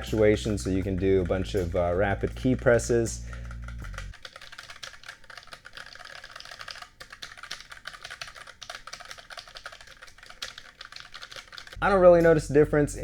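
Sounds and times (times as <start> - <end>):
mechanical keyboard typing: 0.0 - 11.8.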